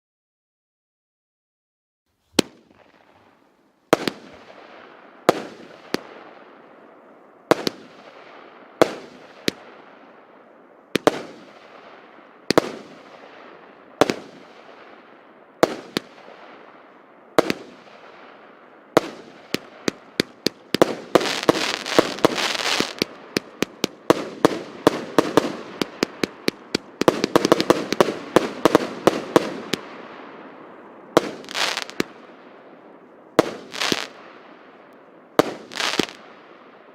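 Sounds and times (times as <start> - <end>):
firework bangs: 2.3 - 10.1, 11.0 - 32.4, 33.4 - 34.6, 35.4 - 36.7
firework crackling: 11.0 - 16.8, 17.4 - 32.4, 33.4 - 34.4, 35.4 - 36.4.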